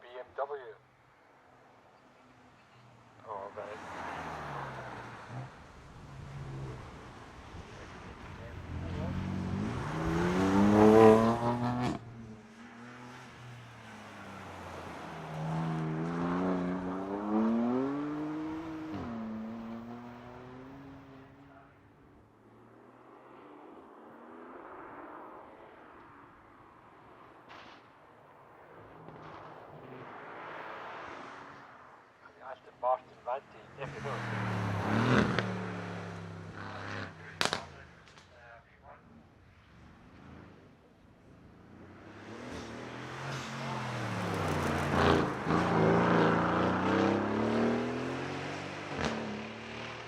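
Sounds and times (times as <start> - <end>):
distant race car engine: 0.1 - 50.0
car engine revving hard: 8.5 - 12.0, 15.4 - 21.2, 33.8 - 37.6, 42.1 - 50.0
sharp crack: 27.4 - 31.0, 37.2 - 38.6.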